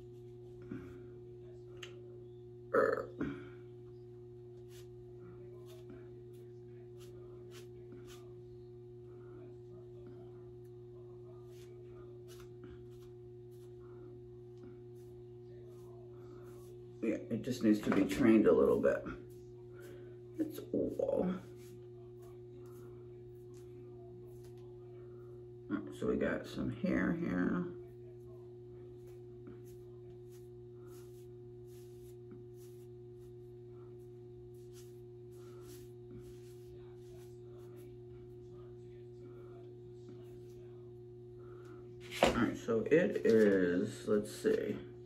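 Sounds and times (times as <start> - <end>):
faint steady hum: 0.0 - 45.0
soft rustling of wig fibres: 29.0 - 38.3
hands rustling wig fibres: 34.5 - 37.4.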